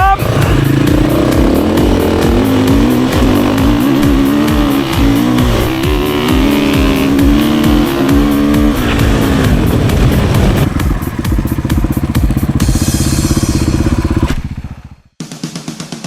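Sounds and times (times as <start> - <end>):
dirt bike engine running hard: 0.0 - 15.2.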